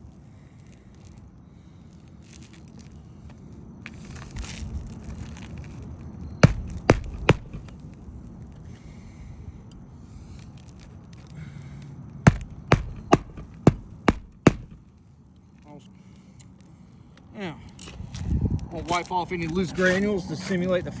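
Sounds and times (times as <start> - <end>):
hammer striking nails: 6.4 - 7.8, 12.3 - 14.8.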